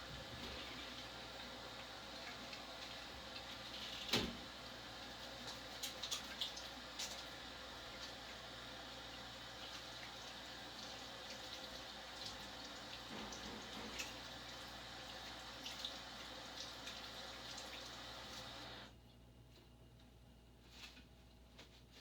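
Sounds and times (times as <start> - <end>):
running water rushing: 0.0 - 18.9
sharp drip-like ticks: 5.4 - 8.4, 9.6 - 18.6.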